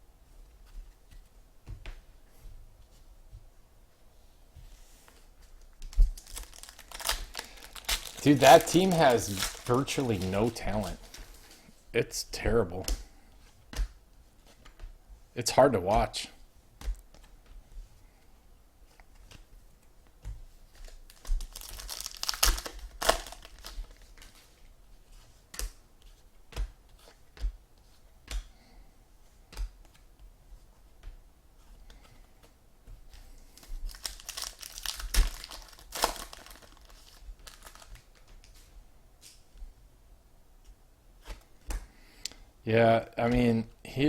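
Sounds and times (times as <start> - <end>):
wrappers torn and crinkled: 5.8 - 11.3, 20.9 - 24.3, 33.6 - 38.2.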